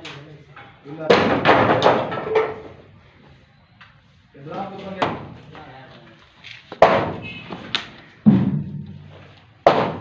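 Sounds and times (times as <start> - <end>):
heavy knocks on concrete formwork: 1.0 - 2.6, 6.8 - 7.2, 8.2 - 9.0, 9.6 - 10.0.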